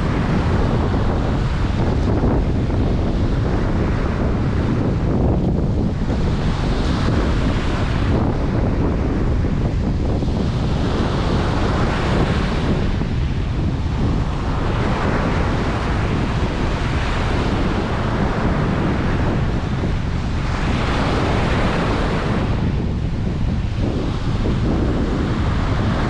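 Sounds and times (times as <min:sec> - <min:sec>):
ocean surf breaking: 0:00.0 - 0:26.0
wind rumble on microphone: 0:00.0 - 0:26.0.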